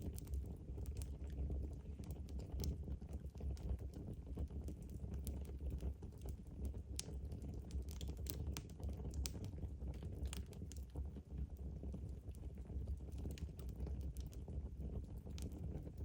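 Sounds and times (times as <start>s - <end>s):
low rumble of flames: 0.0s - 16.0s
wood fire crackling and popping: 0.0s - 16.0s.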